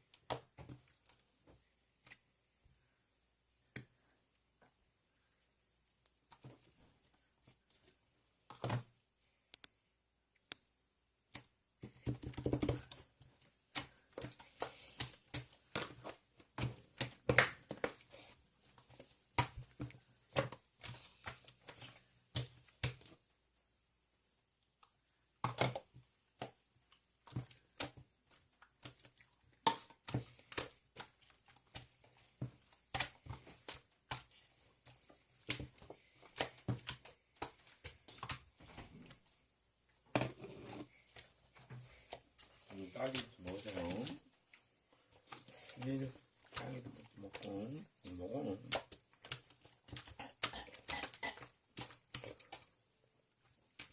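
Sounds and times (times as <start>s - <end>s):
light clicks and taps: 8.5s - 9.8s.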